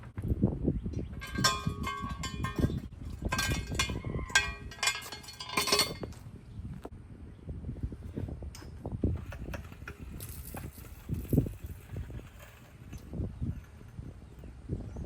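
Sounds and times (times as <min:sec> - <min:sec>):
metal tools clinking and clattering: 0:01.2 - 0:06.2, 0:08.6 - 0:14.5.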